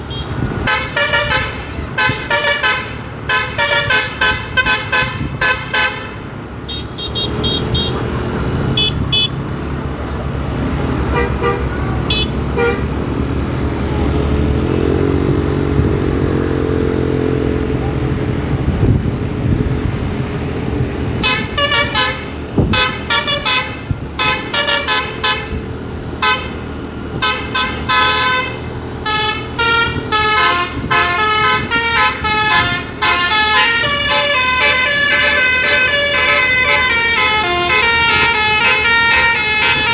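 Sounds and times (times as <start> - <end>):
bus horn toots: 0.0 - 9.4, 11.0 - 13.0, 21.1 - 39.9
low engine rumble: 0.0 - 39.9
rapid multi-pitched horn tune: 0.1 - 6.2, 21.2 - 39.9.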